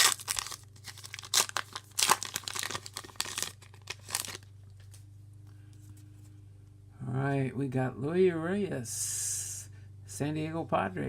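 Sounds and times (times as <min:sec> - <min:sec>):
wrapper tearing and crinkling: 0:00.0 - 0:04.5.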